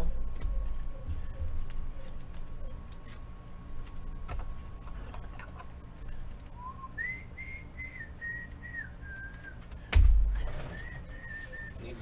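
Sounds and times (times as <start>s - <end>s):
person whistling a tune: 6.6s - 9.9s, 10.7s - 12.0s.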